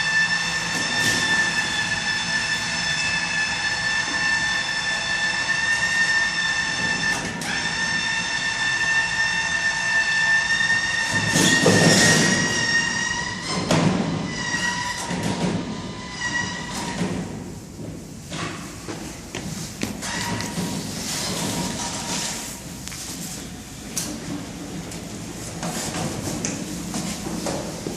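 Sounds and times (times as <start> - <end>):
high-pitched mechanical whine: 0.0 - 13.6
knocks and scraping: 13.4 - 23.4.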